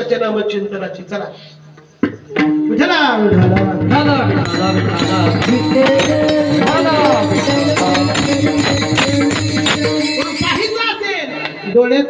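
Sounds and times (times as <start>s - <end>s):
drum beat: 3.4s - 11.0s
jingling percussion: 3.6s - 11.8s.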